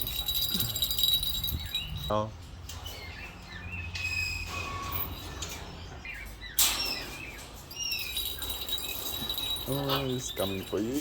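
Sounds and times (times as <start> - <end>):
parrots chirping and whistling: 2.8 - 11.0.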